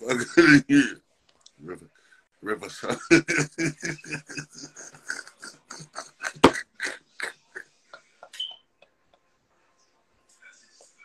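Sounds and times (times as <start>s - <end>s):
man laughing hard: 0.1s - 0.8s, 2.7s - 7.3s.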